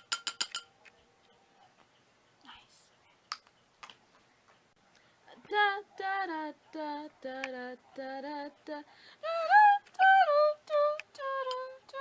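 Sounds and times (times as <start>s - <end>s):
girl singing unaccompanied: 5.3s - 12.0s.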